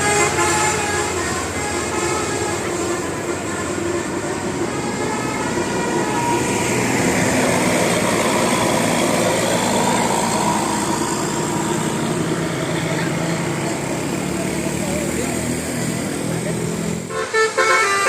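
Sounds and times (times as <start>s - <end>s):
multi-tone air horn: 0.0s - 4.6s, 17.1s - 18.0s
vehicle and street noise: 0.0s - 18.0s.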